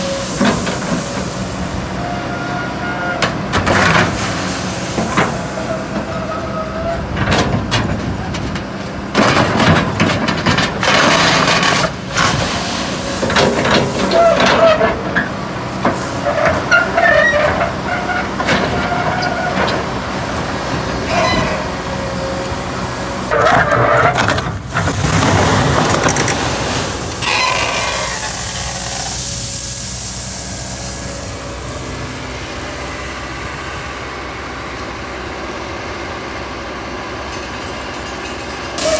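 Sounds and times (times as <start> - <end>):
hydraulic squeals and whines: 0.0 - 3.4, 5.3 - 7.2, 13.7 - 24.4, 27.2 - 29.4
diesel engine running: 0.0 - 38.9
metal clanks and knocks: 6.9 - 21.8.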